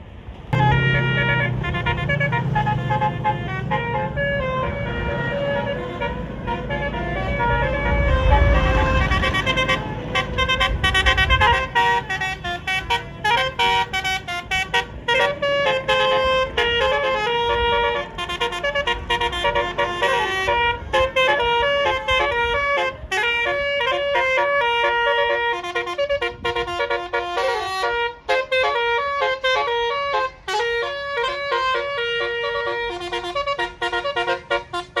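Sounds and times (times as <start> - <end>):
bus engine rumble: 0.0 - 35.0
bus horn playing a tune: 0.5 - 35.0.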